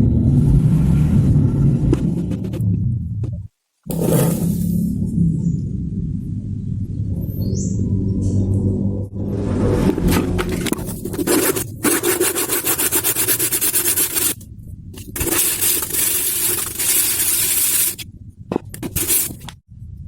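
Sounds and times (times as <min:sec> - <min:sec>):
rapid scraping strokes: 0:09.9 - 0:14.4, 0:15.0 - 0:18.0, 0:18.8 - 0:19.5.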